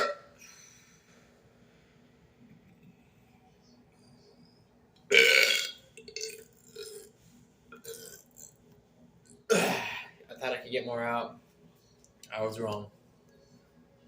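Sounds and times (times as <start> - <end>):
man burping: 0.0 - 0.3, 5.1 - 7.1, 7.8 - 8.5, 9.5 - 10.2.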